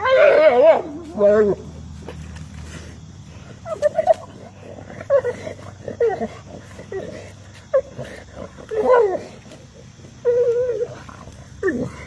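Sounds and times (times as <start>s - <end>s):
dog gobbling and warbling: 3.6s - 9.4s.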